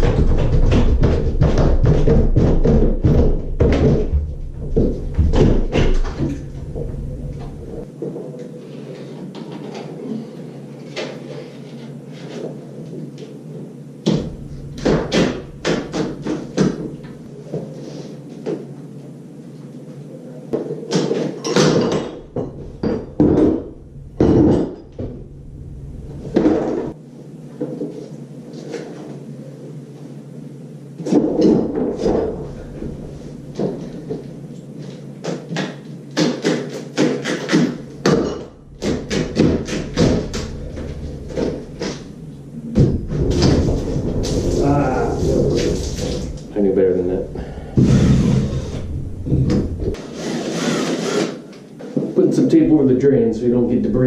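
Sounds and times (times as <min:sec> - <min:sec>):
shower door knocking and clanking: 0:00.0 - 0:07.5.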